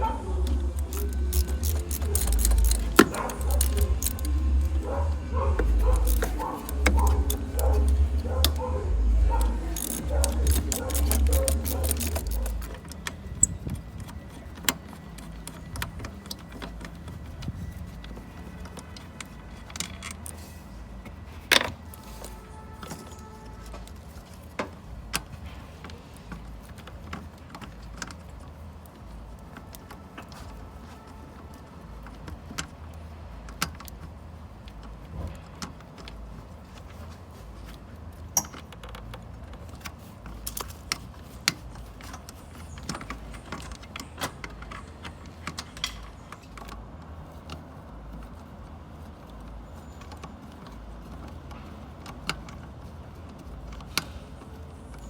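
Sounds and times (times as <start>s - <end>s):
low hum: 0.0s - 18.4s
hand tools clicking on metal: 0.0s - 46.8s.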